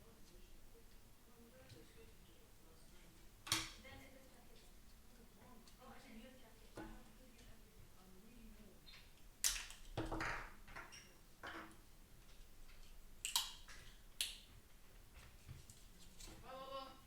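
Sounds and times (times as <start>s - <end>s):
clicks and taps of small parts: 12.2s - 14.5s.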